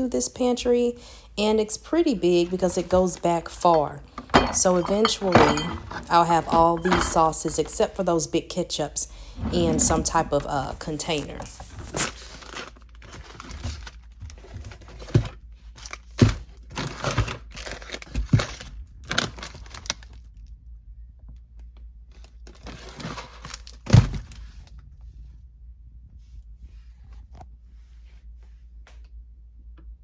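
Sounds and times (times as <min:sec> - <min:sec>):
bottles and containers knocking: 0:04.0 - 0:07.9
plastic crinkling and rustling: 0:11.3 - 0:20.2, 0:22.1 - 0:24.4.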